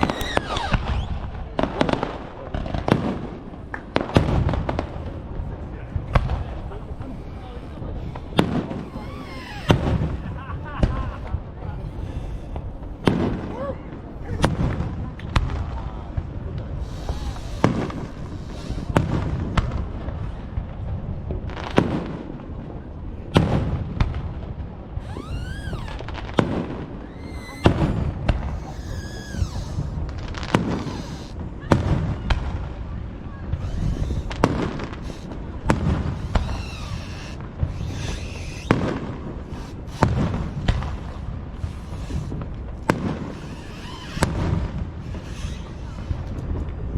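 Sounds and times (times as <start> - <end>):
fireworks whistling: 0.0 - 1.4, 6.1 - 13.5, 16.8 - 19.5, 25.0 - 31.6, 33.6 - 46.6
fireworks bursting: 0.0 - 3.0, 16.7 - 19.7, 25.2 - 32.0, 33.5 - 46.9.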